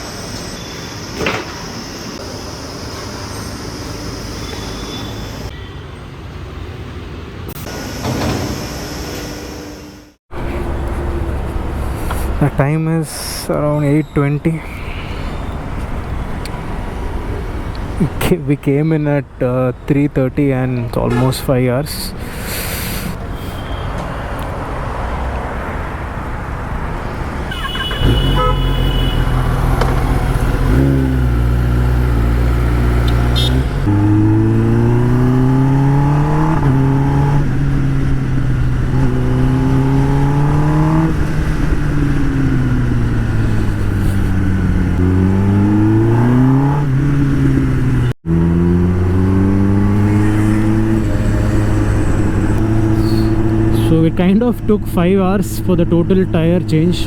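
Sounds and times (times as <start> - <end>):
vehicle horn toot: 27.4 - 29.4, 33.0 - 33.7
motorcycle engine revving: 27.5 - 57.0.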